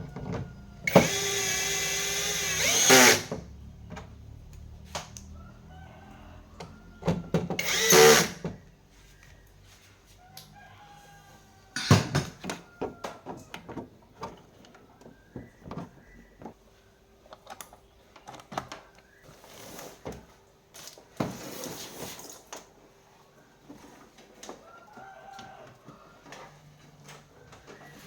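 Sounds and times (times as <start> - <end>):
scraping rustling noises: 8.9 - 10.3, 19.2 - 28.0
clicks and knocks of handling: 17.3 - 19.2.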